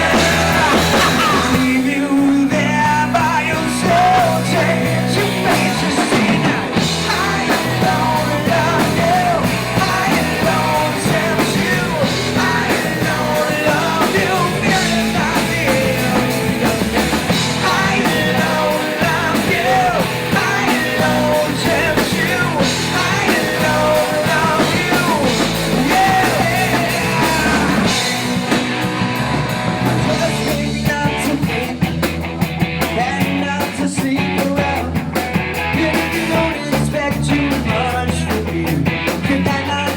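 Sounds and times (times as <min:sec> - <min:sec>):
person singing: 0:00.0 - 0:28.5, 0:29.4 - 0:32.1
rock band playing: 0:00.0 - 0:39.9.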